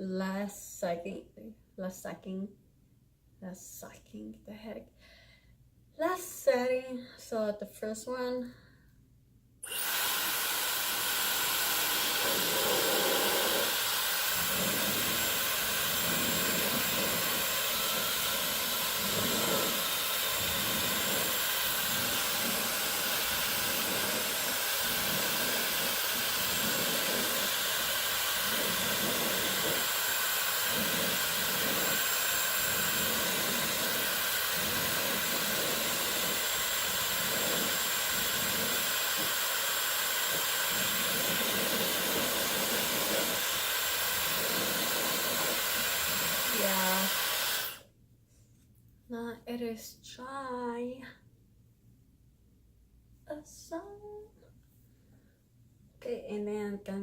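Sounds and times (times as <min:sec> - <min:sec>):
hair dryer running: 0:09.6 - 0:47.8.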